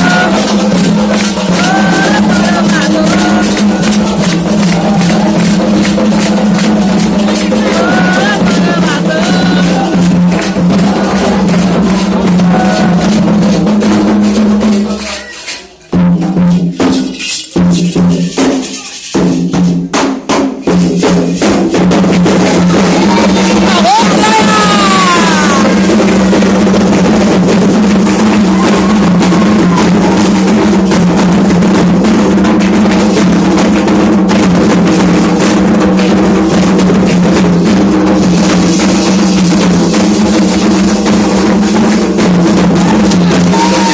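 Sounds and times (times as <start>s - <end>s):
voices singing: 0.0s - 13.6s, 22.5s - 25.9s, 42.6s - 43.9s
struck bell or shaker: 0.0s - 19.9s, 20.6s - 43.9s
hand drums playing fast rhythm: 0.0s - 43.9s.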